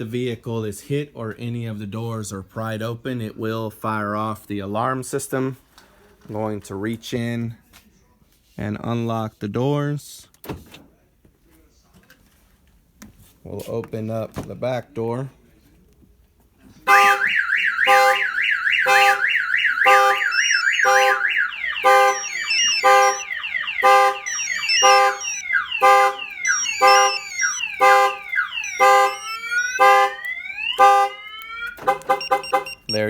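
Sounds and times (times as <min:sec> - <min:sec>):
car alarm siren: 0:16.9 - 0:33.0.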